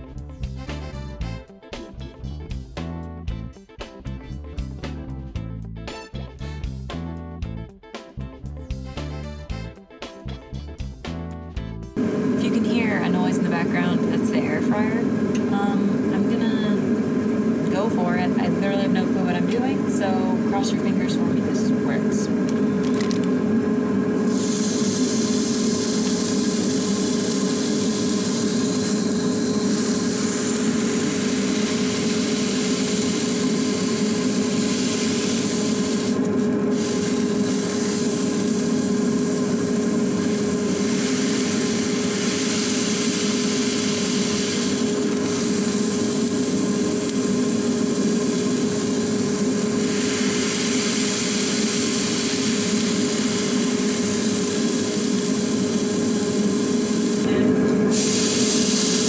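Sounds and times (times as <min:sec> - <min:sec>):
air fryer fan humming: 0:12.0 - 0:59.0
burger patties sizzling in a pan: 0:24.2 - 0:57.3, 0:57.9 - 0:59.0.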